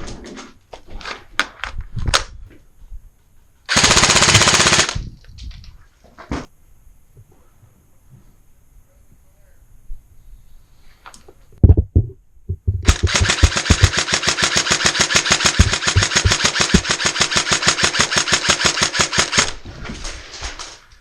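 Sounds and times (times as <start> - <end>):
full-auto airsoft rattle: 3.7 - 5.6, 12.8 - 19.6
airsoft gun shots: 12.8 - 19.5.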